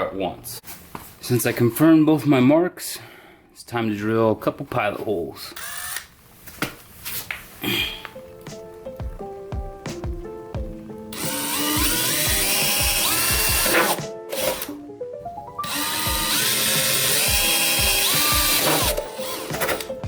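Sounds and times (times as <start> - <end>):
background music: 7.6 - 20.0
power drill drilling: 11.2 - 14.8, 15.6 - 19.9.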